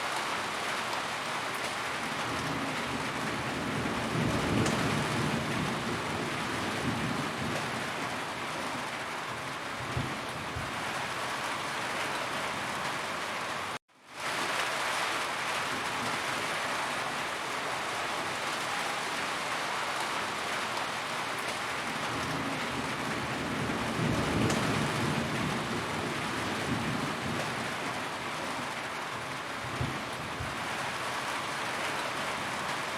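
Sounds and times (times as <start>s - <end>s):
heavy rain on a roof: 0.0s - 32.9s
thunder rumbling: 2.3s - 8.1s, 22.0s - 28.0s.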